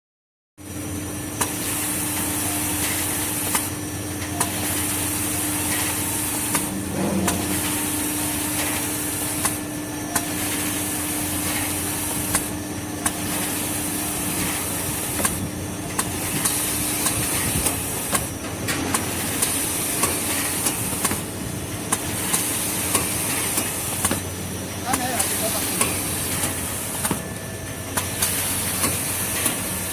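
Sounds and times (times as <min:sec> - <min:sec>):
steady hum: 0:00.6 - 0:29.9
cutting machine high hiss: 0:00.7 - 0:29.9
sharp machine click: 0:05.7 - 0:10.4, 0:14.4 - 0:21.3.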